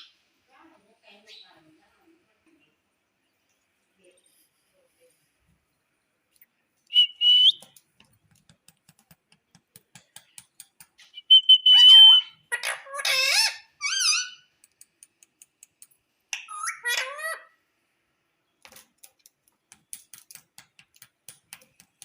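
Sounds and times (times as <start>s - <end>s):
parakeet whistling and calling: 6.9s - 7.6s, 11.0s - 14.4s, 16.4s - 17.4s
faint regular ticks: 14.6s - 16.0s.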